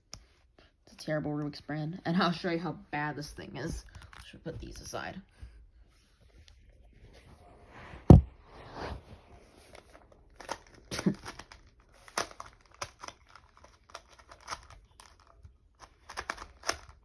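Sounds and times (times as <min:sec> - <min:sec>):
puzzle cube clacking: 0:09.7 - 0:17.0.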